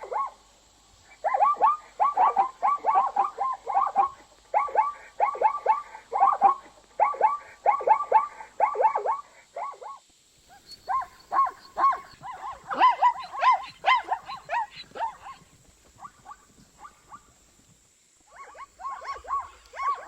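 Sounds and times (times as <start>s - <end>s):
zebra yelping barks: 0.0s - 0.4s, 1.1s - 17.3s, 18.3s - 20.0s.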